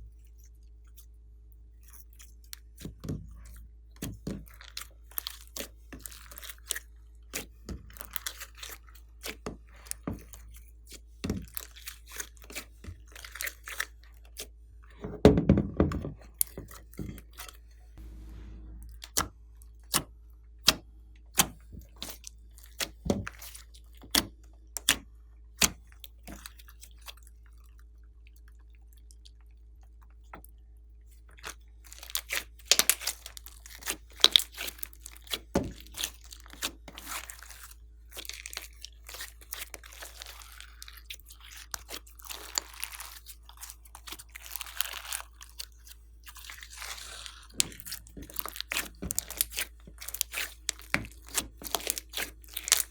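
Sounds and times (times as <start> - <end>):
slime squeezed by hand: 31.9 - 52.9.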